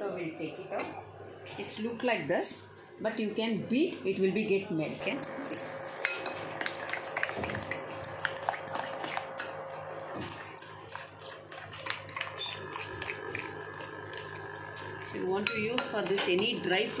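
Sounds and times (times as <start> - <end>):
spoon scraping a bowl: 5.2 - 17.0.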